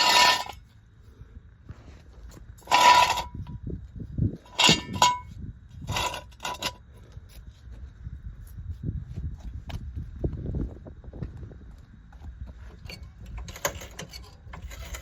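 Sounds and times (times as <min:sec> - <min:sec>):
metal tools clanking: 0:00.0 - 0:00.6, 0:04.5 - 0:05.3, 0:12.8 - 0:15.0.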